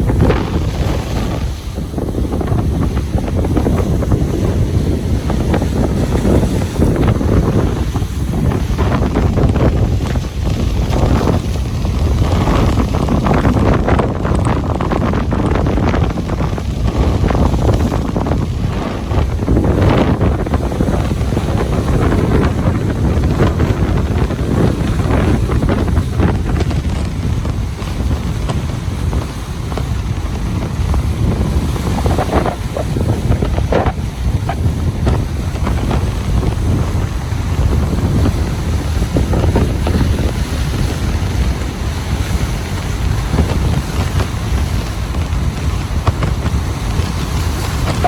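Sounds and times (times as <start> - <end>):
ocean waves breaking on beach: 0.0 - 48.0
wind buffeting microphone: 0.0 - 48.0.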